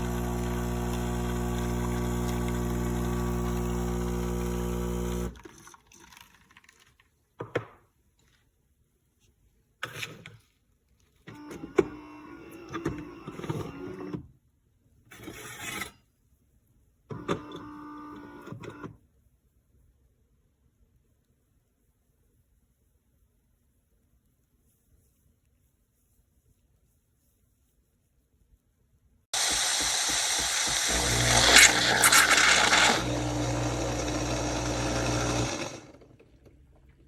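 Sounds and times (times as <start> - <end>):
espresso machine pump humming: 0.0 - 5.5, 29.4 - 36.2.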